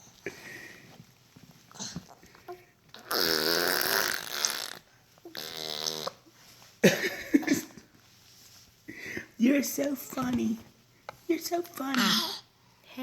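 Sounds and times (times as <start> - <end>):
raspberry blown through lips: 3.0 - 6.2.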